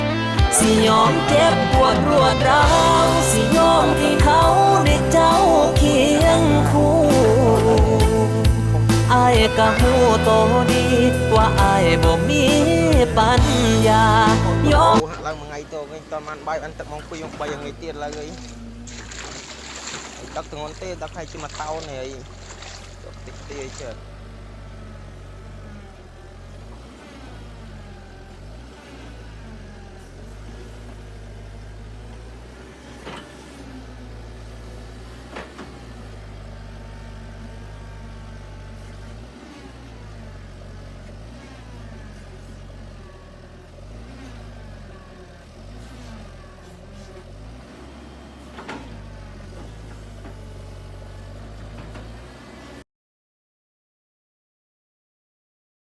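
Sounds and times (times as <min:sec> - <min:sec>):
excavator diesel engine: 0:00.0 - 0:52.8.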